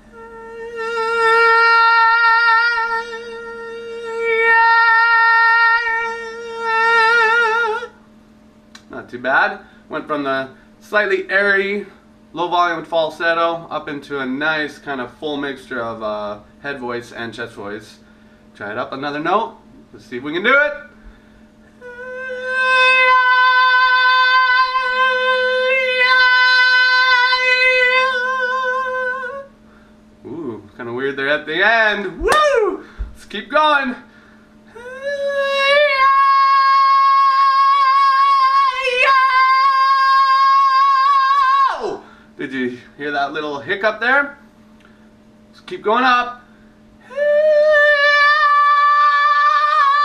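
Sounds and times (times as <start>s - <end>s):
man singing sustained high note: 0.0s - 8.0s, 21.8s - 29.5s, 34.7s - 42.2s, 47.0s - 50.0s.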